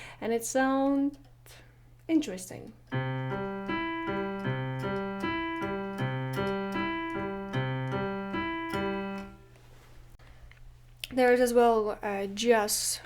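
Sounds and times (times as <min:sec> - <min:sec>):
piano playing arpeggio: 0:02.9 - 0:09.6.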